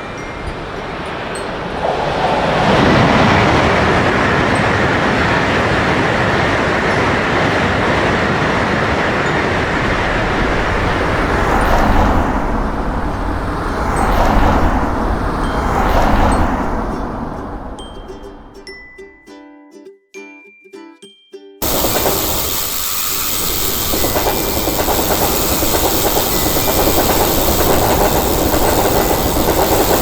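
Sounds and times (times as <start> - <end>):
train clattering surges: 0.0 - 18.7, 21.6 - 30.0
train wheels rumbling on rails: 0.0 - 18.7, 21.6 - 30.0.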